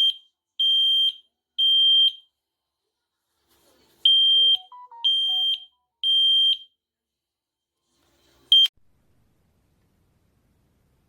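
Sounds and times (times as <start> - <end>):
smoke alarm beeping: 4.1 - 6.8.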